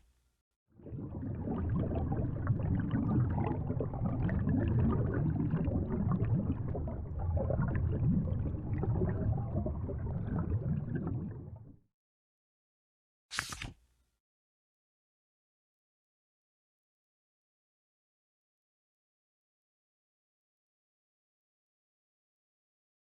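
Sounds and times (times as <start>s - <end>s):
water churning and gurgling: 0.7s - 11.9s.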